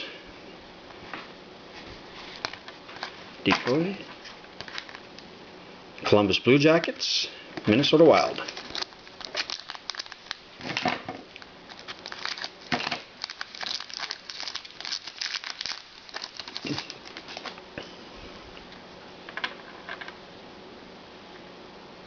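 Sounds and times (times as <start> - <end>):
card pack wrapper crinkling: 2.2 - 5.2, 7.7 - 10.7, 11.3 - 17.6.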